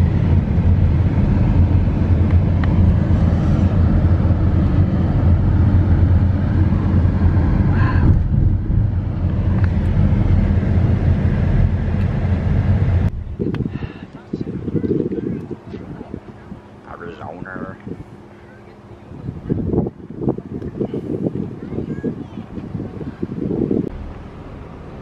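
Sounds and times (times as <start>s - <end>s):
high-pitched vehicle sound: 0.0s - 13.5s, 23.3s - 25.0s
road traffic rumble: 0.0s - 25.0s
wind buffeting microphone: 0.0s - 25.0s.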